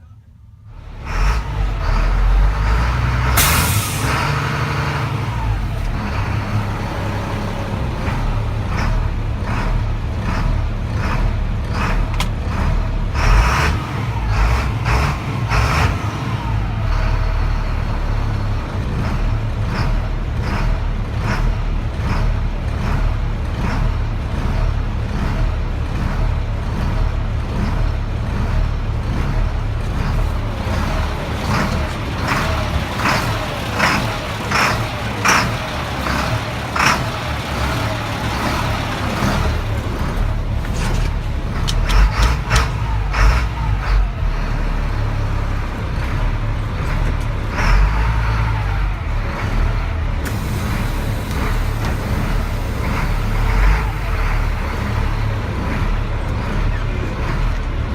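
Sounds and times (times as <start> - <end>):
diesel engine running: 0.0 - 57.9
sharp engine ticks: 29.8 - 40.7.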